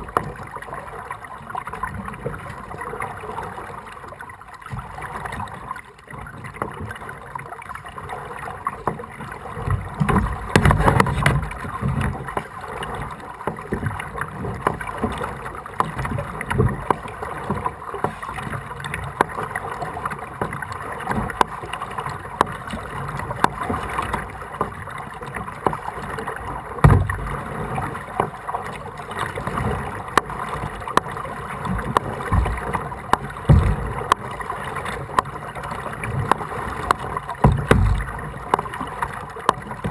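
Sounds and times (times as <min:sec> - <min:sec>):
paddle splashing water: 0:00.0 - 0:39.9
water sloshing against hull: 0:00.0 - 0:39.9
dull thumps: 0:10.0 - 0:11.6, 0:26.8 - 0:27.4, 0:31.7 - 0:34.3, 0:37.4 - 0:38.7.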